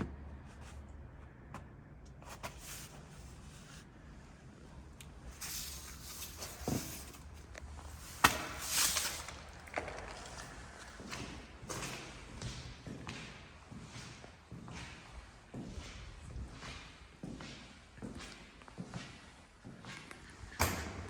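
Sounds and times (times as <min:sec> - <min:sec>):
footsteps: 0:05.3 - 0:20.5.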